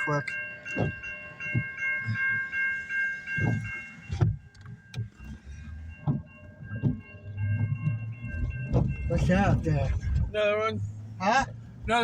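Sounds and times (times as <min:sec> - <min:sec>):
railroad crossing bell ringing: 0:00.0 - 0:11.1
low thumps: 0:03.3 - 0:05.3, 0:05.9 - 0:11.0.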